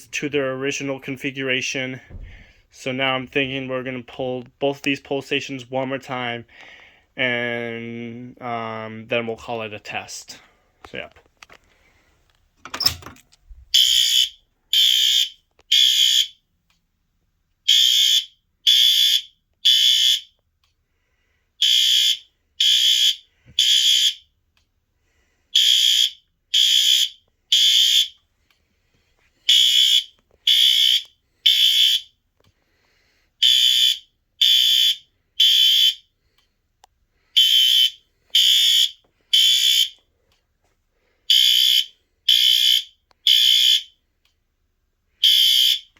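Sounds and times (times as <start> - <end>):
short knock: 2.1 - 2.5
fire alarm horns beeping: 13.8 - 16.4, 17.6 - 20.4, 21.6 - 24.3, 25.5 - 28.2, 29.5 - 32.2, 33.4 - 36.2, 37.4 - 40.0, 41.3 - 44.0, 45.2 - 45.9.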